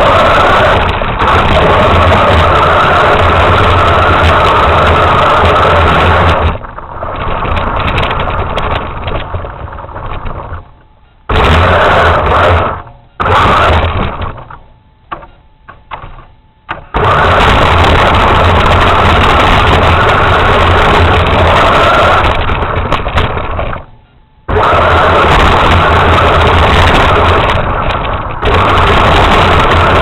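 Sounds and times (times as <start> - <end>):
rc truck motor running: 0.0 - 23.9, 24.5 - 30.0
clicks: 5.4 - 24.7.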